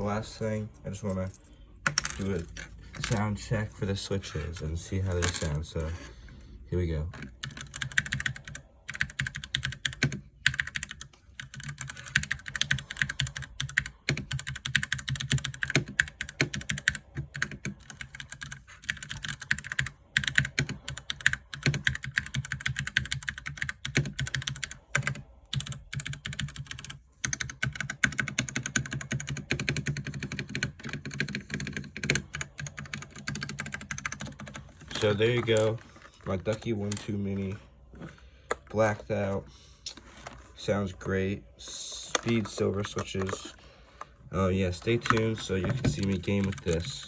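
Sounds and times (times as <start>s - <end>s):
rapid typing on mechanical keyboard: 7.2s - 37.6s, 42.0s - 47.0s.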